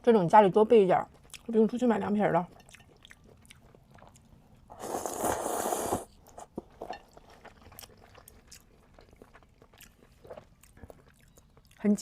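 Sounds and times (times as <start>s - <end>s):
quiet wet chewing: 1.0s - 12.0s
noodle slurping: 4.7s - 6.6s.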